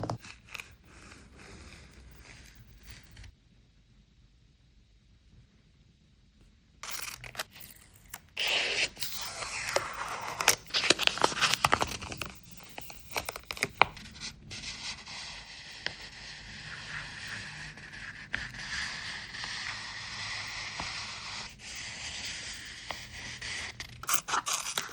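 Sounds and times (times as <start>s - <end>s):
packaging rustling and tearing: 6.8s - 14.0s, 24.0s - 24.9s.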